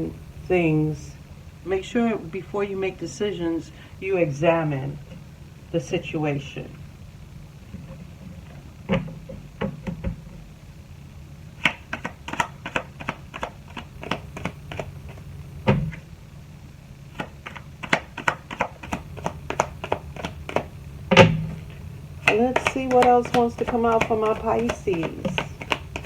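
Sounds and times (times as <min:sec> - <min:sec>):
cards shuffling: 0:11.9 - 0:16.0, 0:17.2 - 0:26.0.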